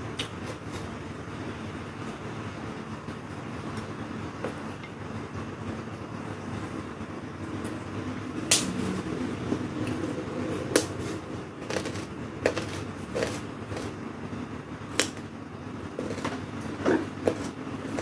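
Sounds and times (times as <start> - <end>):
low background hum: 0.0 - 18.0
crunchy vegetable chewing: 10.7 - 14.0, 15.9 - 18.0.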